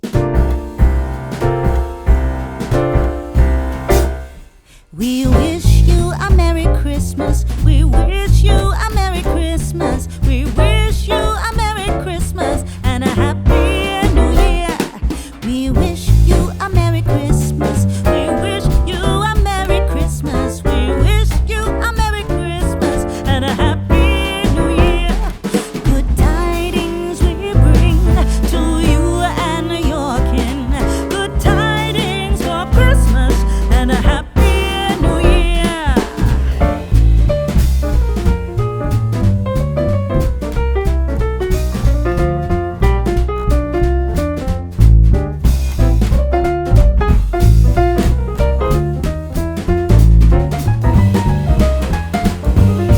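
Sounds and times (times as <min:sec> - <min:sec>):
upbeat instrumental music: 0:00.0 - 0:52.9
song with vocal and heavy bass: 0:23.9 - 0:36.9.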